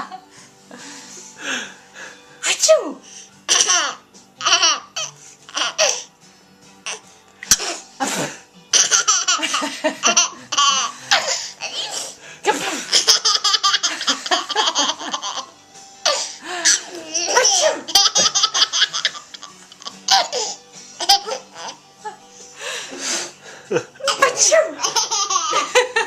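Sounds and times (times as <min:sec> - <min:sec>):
person laughing hard: 0:07.6 - 0:11.4, 0:12.5 - 0:15.5, 0:16.6 - 0:22.2, 0:23.6 - 0:26.0.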